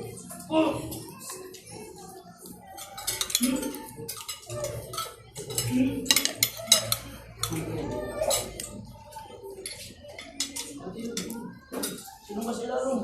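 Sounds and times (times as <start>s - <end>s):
close eating sounds: 0.0s - 13.0s
cutlery clinking on a plate: 2.6s - 12.3s.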